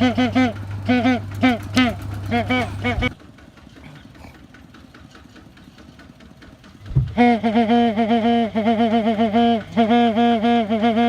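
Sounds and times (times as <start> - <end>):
tractor horn pulsing: 0.0 - 3.2, 7.1 - 11.0
faint engine idling: 0.0 - 11.0
short low thump: 6.9 - 7.2.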